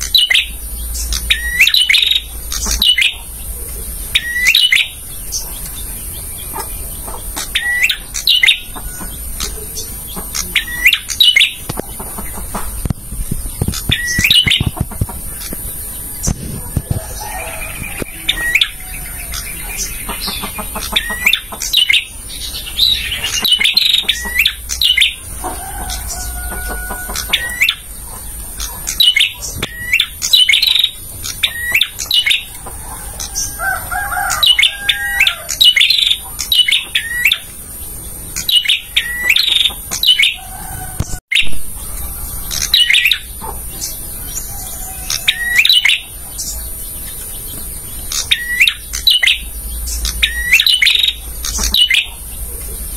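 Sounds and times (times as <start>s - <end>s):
bird singing sharp high chirps: 0.0s - 3.2s, 4.1s - 12.4s, 13.6s - 16.5s, 25.9s - 28.0s, 28.6s - 32.6s, 48.0s - 52.1s
lower whistled bird notes: 0.0s - 3.2s, 3.9s - 12.0s, 48.0s - 52.2s.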